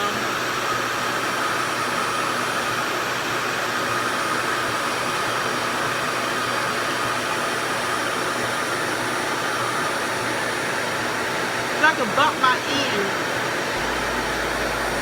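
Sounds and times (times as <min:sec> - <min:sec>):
hair dryer airflow rushing: 0:13.8 - 0:15.0.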